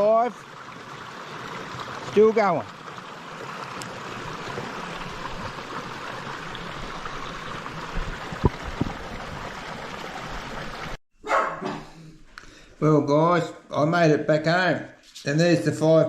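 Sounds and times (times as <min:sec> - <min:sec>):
creek water running over rocks: 0:00.0 - 0:11.0.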